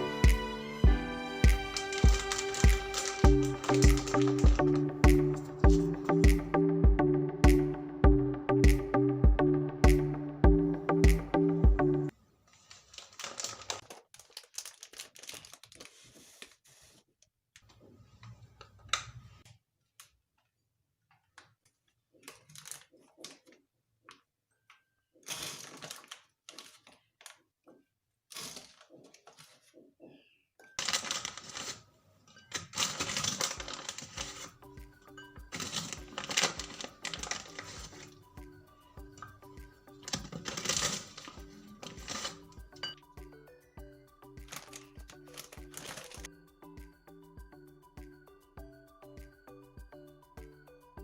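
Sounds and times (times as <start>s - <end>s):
objects clicking and tapping: 1.6s - 6.5s, 35.2s - 38.2s, 40.0s - 43.0s.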